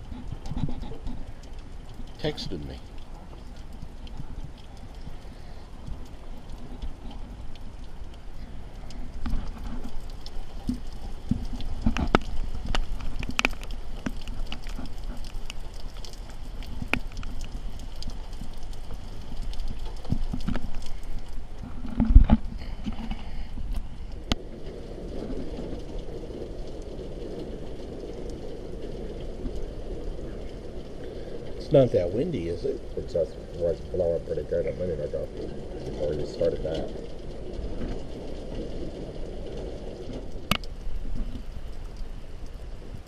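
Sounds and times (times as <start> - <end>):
wind buffeting microphone: 3.4 - 43.0
sharp taps and clicks: 40.5 - 40.7.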